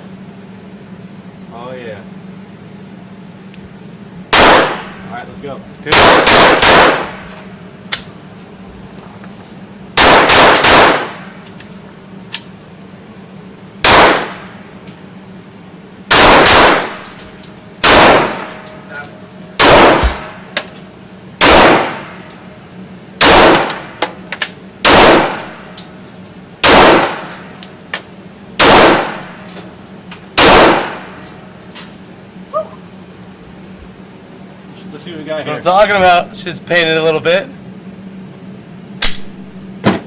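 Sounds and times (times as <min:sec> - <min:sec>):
pistol shots: 0:04.3 - 0:05.1, 0:05.9 - 0:07.3, 0:10.0 - 0:11.3, 0:13.8 - 0:14.5, 0:16.1 - 0:17.2, 0:17.8 - 0:18.6, 0:19.6 - 0:20.4, 0:21.4 - 0:22.3, 0:23.2 - 0:24.1, 0:24.8 - 0:25.6, 0:26.6 - 0:27.4, 0:28.6 - 0:29.4, 0:30.4 - 0:31.2.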